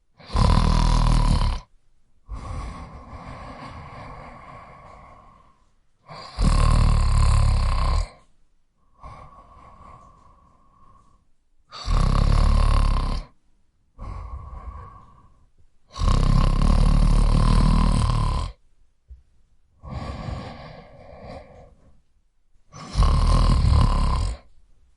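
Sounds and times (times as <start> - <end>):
person snoring: 0.2 - 1.7, 2.3 - 13.4, 14.0 - 18.6, 19.8 - 22.0, 22.7 - 24.5
quiet breath: 2.2 - 6.4, 8.0 - 12.0, 13.1 - 16.0, 19.7 - 23.0.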